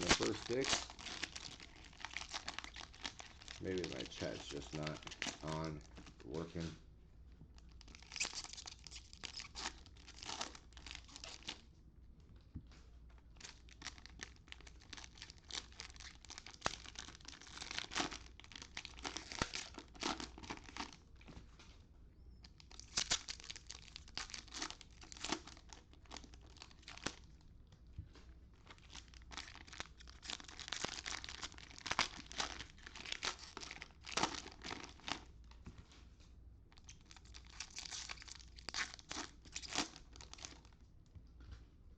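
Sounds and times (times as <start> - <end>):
packs tearing open by hand: 0.0 - 5.7, 7.8 - 11.6, 13.4 - 21.0, 22.6 - 27.2, 28.7 - 35.2, 36.9 - 40.6
cellophane wrappers crinkling: 0.0 - 6.7, 7.6 - 11.6, 13.4 - 21.1, 22.4 - 27.4, 28.5 - 36.0, 36.7 - 40.8.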